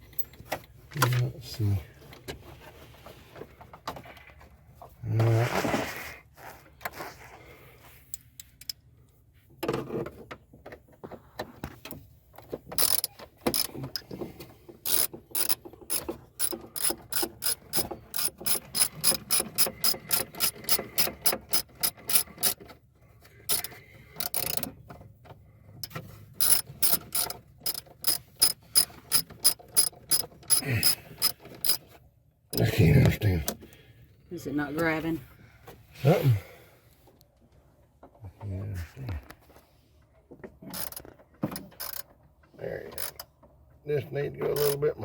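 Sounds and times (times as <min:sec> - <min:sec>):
hand ratchet clicking: 0:12.7 - 0:14.2, 0:14.8 - 0:22.7, 0:23.4 - 0:24.7, 0:25.8 - 0:31.8, 0:40.7 - 0:42.1, 0:42.9 - 0:43.3, 0:44.6 - 0:44.8.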